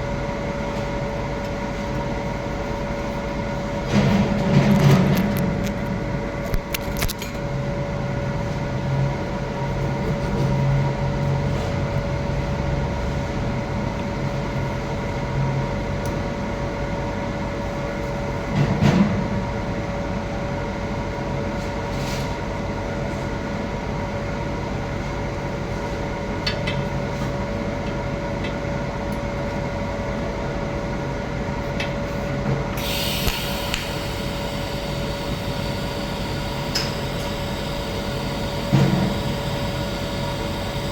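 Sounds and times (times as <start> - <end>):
welding arc hum and crackle: 0.3 - 7.6, 31.8 - 40.9
bright hiss: 32.8 - 40.9.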